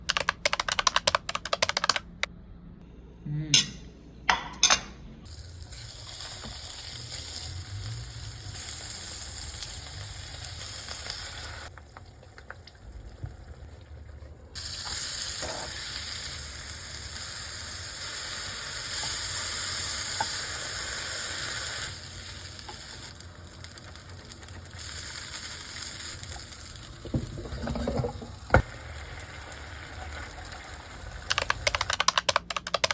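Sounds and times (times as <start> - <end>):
food sizzling in a hot pan: 5.3 - 11.7, 14.6 - 27.4.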